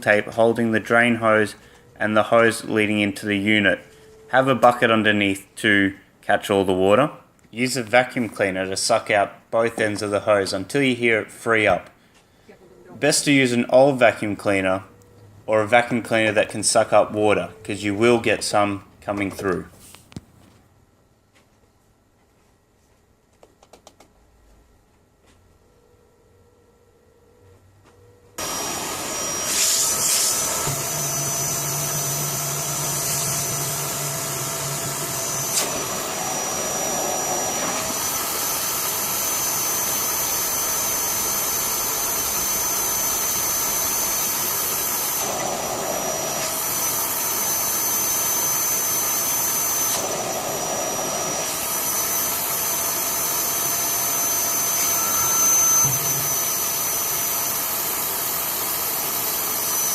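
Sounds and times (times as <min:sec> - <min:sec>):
vacuum cleaner with high whine: 0:28.3 - 0:59.9.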